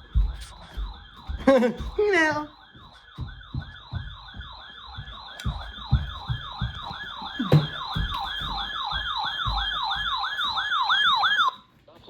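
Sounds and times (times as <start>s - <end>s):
low thuds: 0.0s - 10.8s
electronic siren alert tone: 0.0s - 11.6s.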